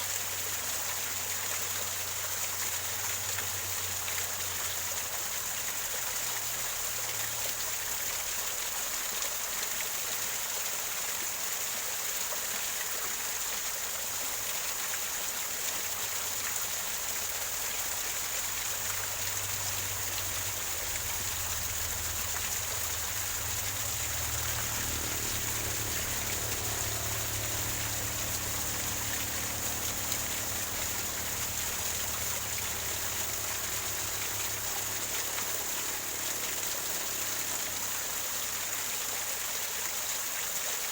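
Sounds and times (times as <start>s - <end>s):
waterfall gurgling over rocks: 0.0s - 40.9s.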